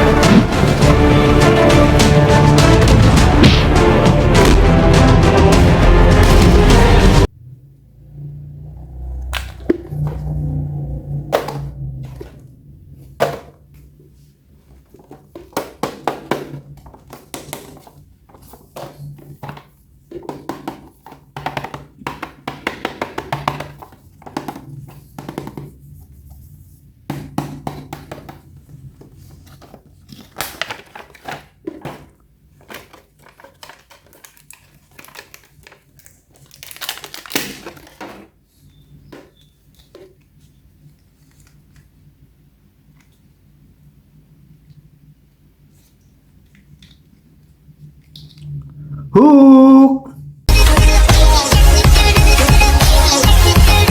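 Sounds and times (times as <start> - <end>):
packaging crinkling: 29.1 - 41.9.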